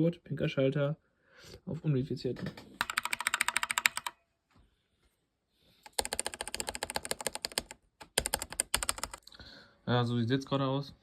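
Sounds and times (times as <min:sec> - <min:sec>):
mechanical keyboard typing: 0:02.8 - 0:04.2, 0:05.8 - 0:09.2.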